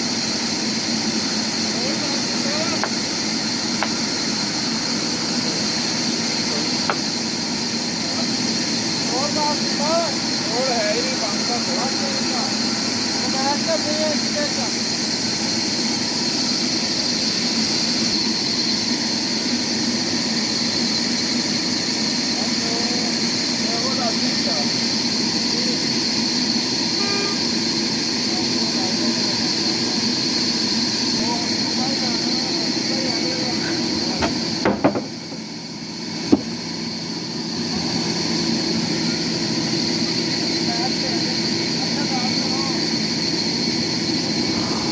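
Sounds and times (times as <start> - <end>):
sawmill machinery humming and hissing: 0.0 - 44.9
short knocks: 34.2 - 35.5, 36.3 - 36.6.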